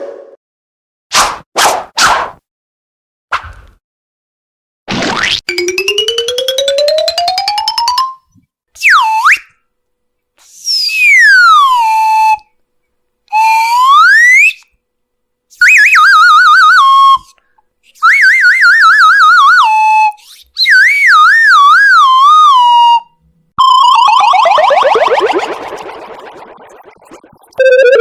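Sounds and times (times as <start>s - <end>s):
cartoon slide whistle: 5.5s - 8.2s, 13.4s - 14.6s, 23.6s - 28.0s.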